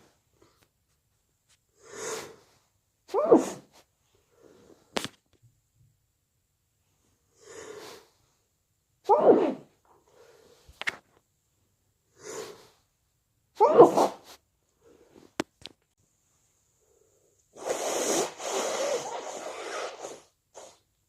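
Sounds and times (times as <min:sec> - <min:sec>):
noisy breathing: 0:01.8 - 0:02.6, 0:07.3 - 0:08.3, 0:10.0 - 0:10.8, 0:12.1 - 0:12.8
person sneezing: 0:03.1 - 0:03.8, 0:09.0 - 0:09.8, 0:13.6 - 0:14.4, 0:17.6 - 0:20.8.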